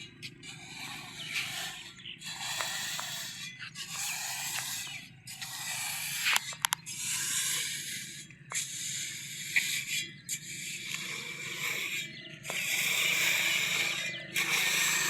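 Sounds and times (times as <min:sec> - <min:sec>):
low machine hum: 0:00.0 - 0:15.0
sharp clicks: 0:06.2 - 0:06.9.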